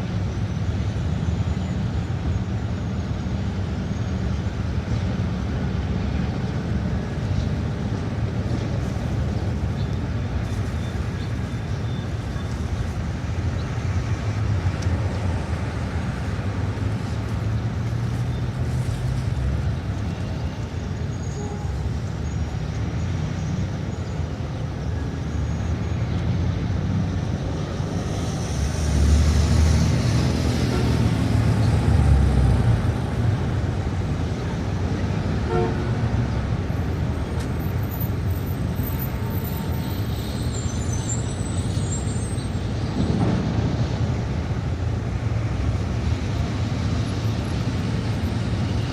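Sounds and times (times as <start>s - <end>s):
street traffic rumble: 0.0s - 48.9s
heavy vehicle passing with hiss: 25.3s - 48.9s.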